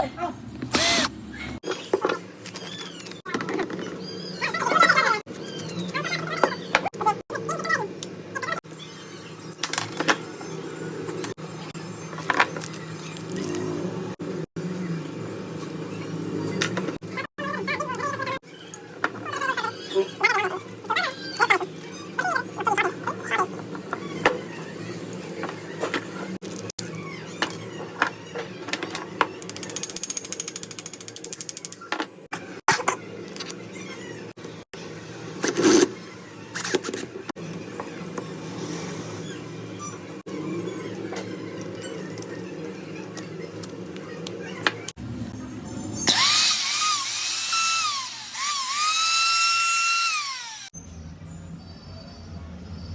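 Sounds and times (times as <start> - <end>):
angle grinder motor whining: 0.5 - 1.6, 45.8 - 50.8.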